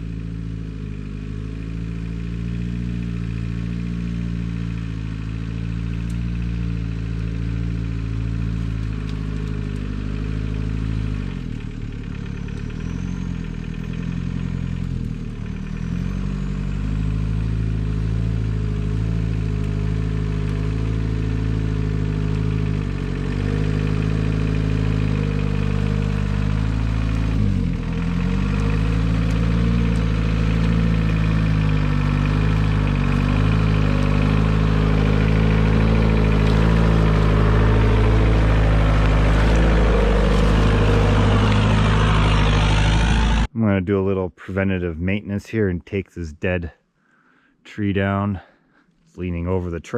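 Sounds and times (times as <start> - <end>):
car engine running at low speed: 0.0 - 43.8.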